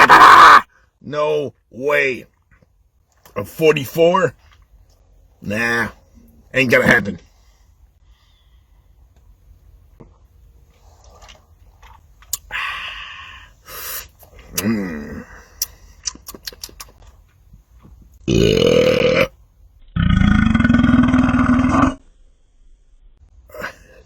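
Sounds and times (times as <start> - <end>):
closed-mouth humming: 4.4 - 22.2
small mouth clicks: 11.2 - 12.5, 14.2 - 14.8, 15.6 - 17.2
man belching loudly: 14.5 - 15.4, 18.3 - 19.3, 20.0 - 22.0.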